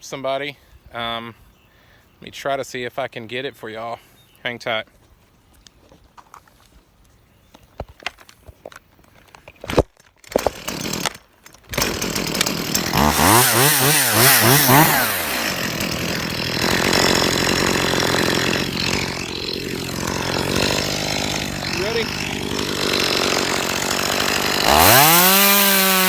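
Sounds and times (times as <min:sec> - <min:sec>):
chainsaw revving: 0:10.3 - 0:26.0.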